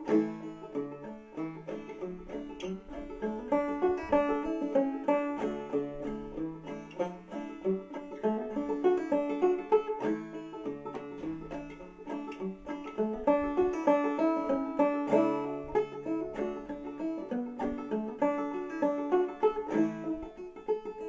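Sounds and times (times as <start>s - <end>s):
banjo playing: 0.0s - 21.0s.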